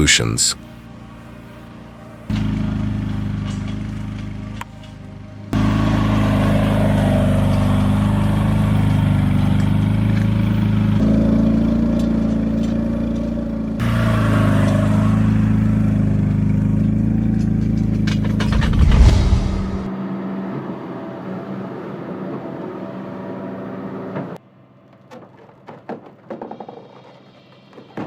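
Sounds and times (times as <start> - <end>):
engine running: 0.0 - 19.9.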